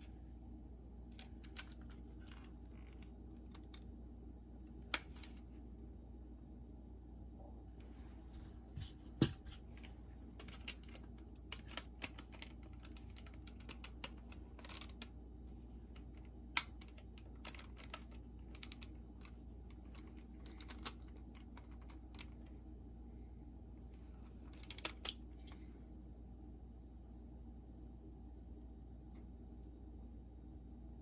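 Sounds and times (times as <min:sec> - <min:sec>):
small plastic parts clicking: 0:01.1 - 0:03.9, 0:09.2 - 0:15.1, 0:15.9 - 0:22.5, 0:24.2 - 0:25.6.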